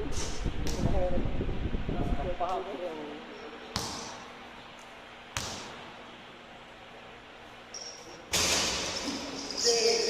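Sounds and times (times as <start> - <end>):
basketball bouncing in gym: 3.6 - 4.4, 5.3 - 6.1, 7.8 - 9.4.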